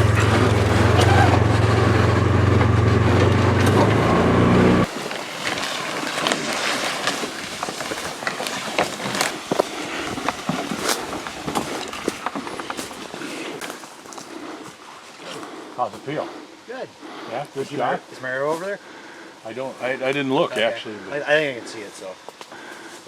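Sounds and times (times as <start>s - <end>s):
vehicle engine droning: 0.0s - 4.9s
footsteps through dry brush: 4.8s - 16.2s, 18.4s - 18.8s.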